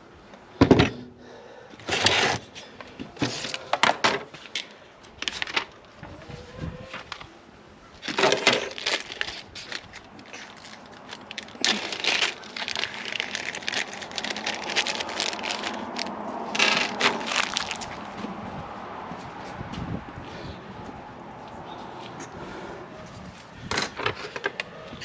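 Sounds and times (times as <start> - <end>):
rustling and crackling parts: 1.8 - 7.4, 8.0 - 19.9, 23.0 - 25.0.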